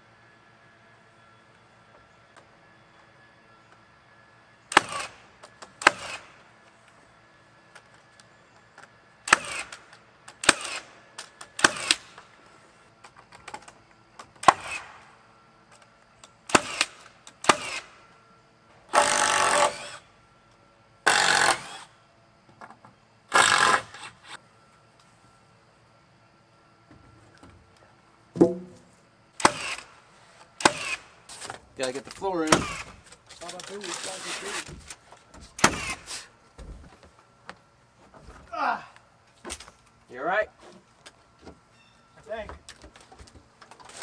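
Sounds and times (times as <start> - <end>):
sharp impacts on wood: 28.4 - 29.8, 30.6 - 31.0, 32.5 - 33.0, 35.5 - 36.0.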